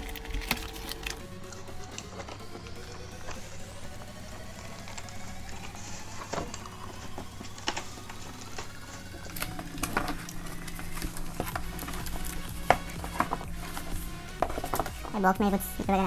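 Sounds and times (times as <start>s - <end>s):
clicks and knocks: 0.0s - 1.2s
packaging rustling: 0.0s - 1.2s, 6.4s - 15.1s
faint background music: 0.0s - 16.0s.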